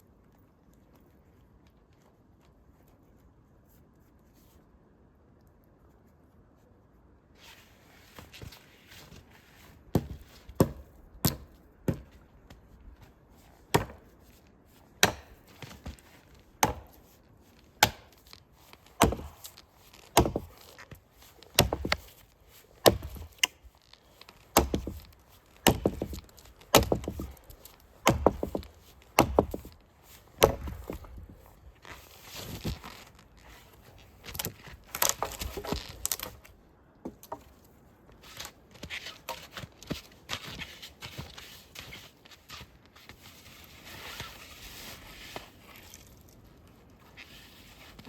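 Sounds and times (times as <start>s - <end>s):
axe chopping firewood: 9.9s - 12.2s, 13.7s - 14.1s, 15.0s - 16.0s, 16.6s - 17.1s, 17.8s - 22.2s, 22.8s - 23.6s, 24.4s - 29.8s, 30.4s - 31.3s, 34.3s - 36.4s.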